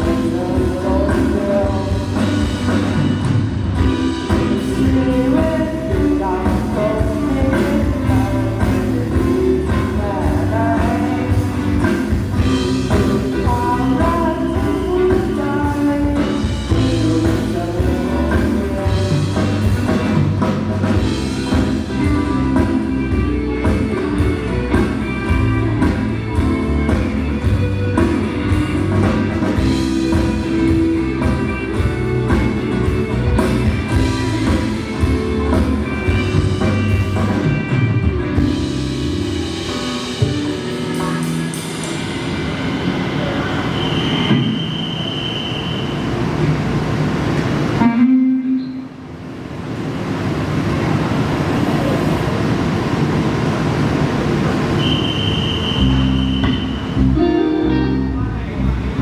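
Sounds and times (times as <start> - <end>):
amplified pop rock music: 0.0 - 44.6, 54.8 - 59.0.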